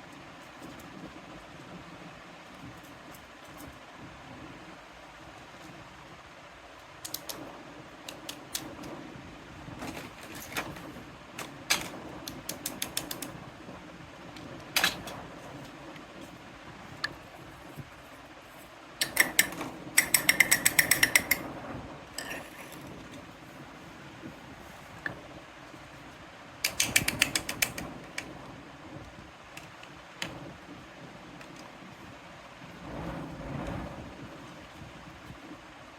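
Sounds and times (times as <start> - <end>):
plastic toy pieces clicking: 7.1 - 7.4, 11.7 - 13.3, 19.0 - 21.4, 26.6 - 27.8.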